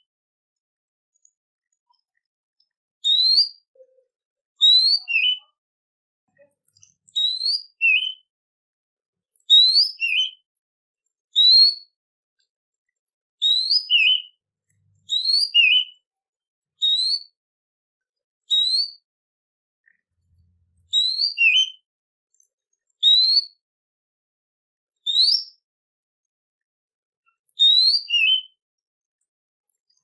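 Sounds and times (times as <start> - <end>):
songbird whistled phrases: 3.0 - 4.0, 4.6 - 5.5, 7.2 - 8.3, 9.5 - 10.4, 13.4 - 14.4, 15.1 - 16.0, 16.8 - 17.2, 18.5 - 19.0, 20.9 - 21.8, 23.0 - 23.5, 25.1 - 25.5, 27.6 - 28.6.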